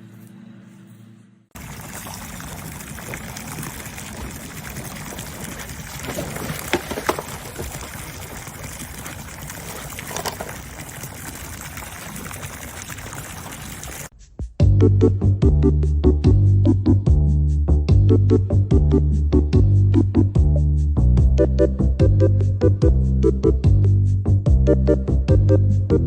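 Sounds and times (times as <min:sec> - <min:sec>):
water pouring and running: 0:01.6 - 0:14.1
water splashes: 0:01.6 - 0:14.1.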